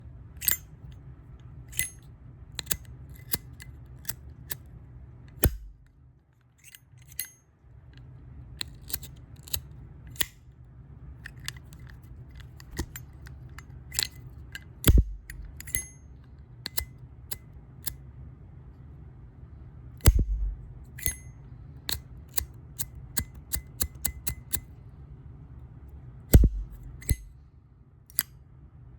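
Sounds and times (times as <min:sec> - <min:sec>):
heavy click with thump: 0:20.0 - 0:20.7, 0:26.4 - 0:27.3.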